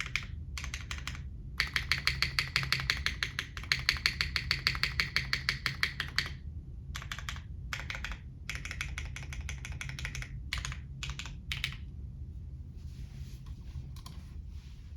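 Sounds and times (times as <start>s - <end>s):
mechanical keyboard typing: 0.0s - 6.4s, 7.0s - 11.8s.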